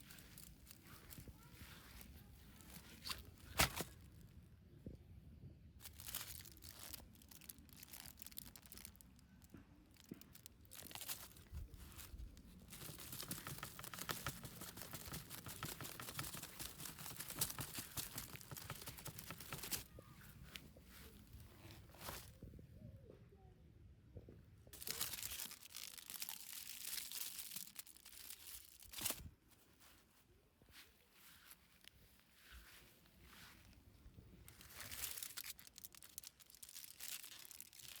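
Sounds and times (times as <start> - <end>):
packaging crinkling and tearing: 0.0 - 4.2, 5.8 - 22.3, 24.8 - 29.3, 34.4 - 38.0.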